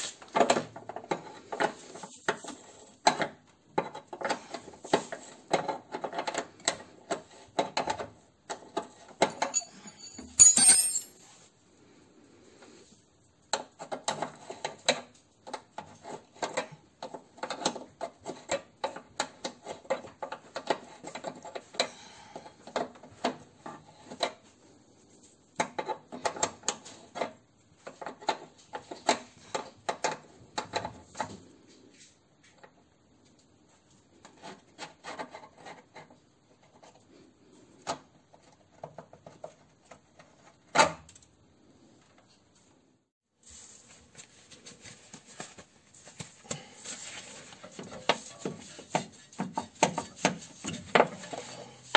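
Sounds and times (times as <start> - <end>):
hand tools clicking and scraping: 0.1 - 11.2, 45.1 - 51.9.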